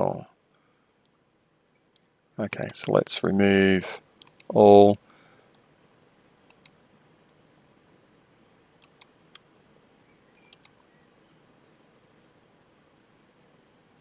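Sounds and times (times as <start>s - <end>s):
computer mouse clicking: 4.2s - 4.6s, 6.5s - 7.4s, 8.8s - 9.4s, 10.4s - 10.8s.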